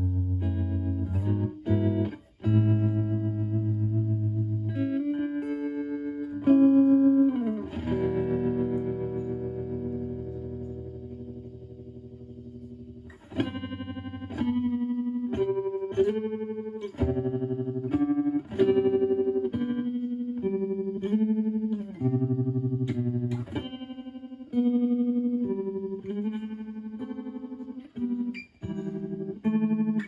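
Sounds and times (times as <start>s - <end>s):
electric guitar with tremolo: 0.0s - 30.0s.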